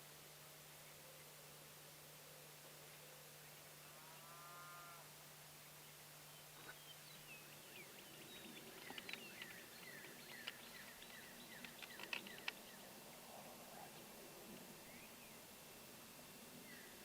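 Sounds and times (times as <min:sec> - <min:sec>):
cow mooing: 0:04.0 - 0:05.0
small birds chirping: 0:05.7 - 0:15.5.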